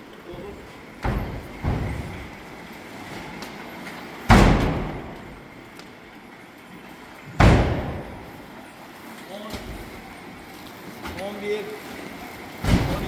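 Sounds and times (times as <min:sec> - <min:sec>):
heavy thud with booming ring: 0:04.3 - 0:05.4, 0:07.4 - 0:08.4.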